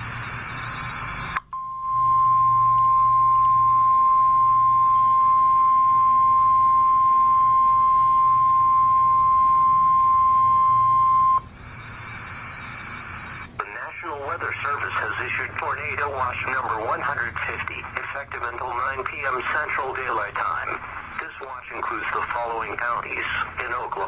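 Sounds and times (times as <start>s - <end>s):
radio static hiss: 0.0s - 1.5s, 6.7s - 8.7s, 11.0s - 24.0s
steady high alarm tone: 0.0s - 13.3s.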